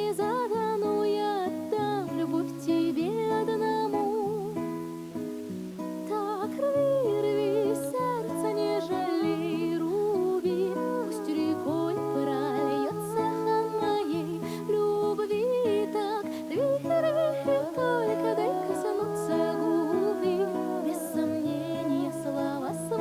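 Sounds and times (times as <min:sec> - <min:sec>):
wavering melody with vibrato: 0:06.9 - 0:23.0.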